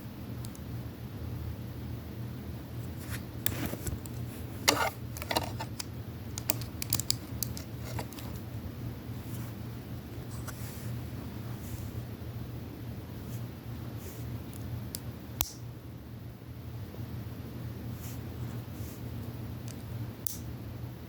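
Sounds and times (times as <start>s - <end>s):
steady low hum: 0.0s - 21.0s
plastic bricks clicking: 3.5s - 8.4s.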